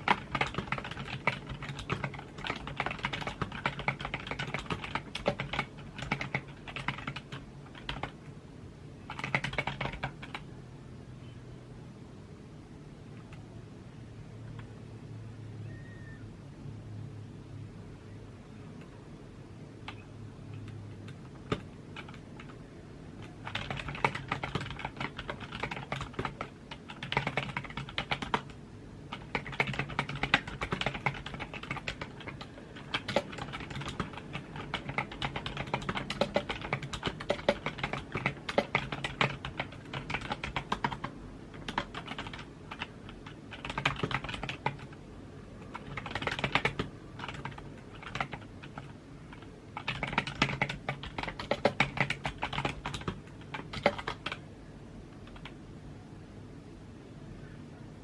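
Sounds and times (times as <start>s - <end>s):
typing on computer keyboard: 0.0s - 8.2s, 9.0s - 10.5s, 19.8s - 22.6s, 23.2s - 45.0s, 45.6s - 54.4s, 55.2s - 55.6s.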